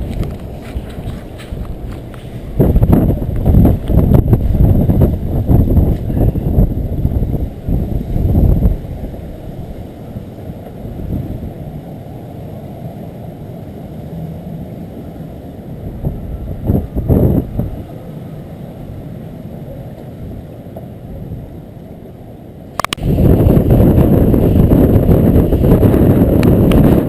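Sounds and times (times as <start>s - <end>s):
wind buffeting microphone: 0.0s - 27.0s
sharp click: 22.8s - 23.0s.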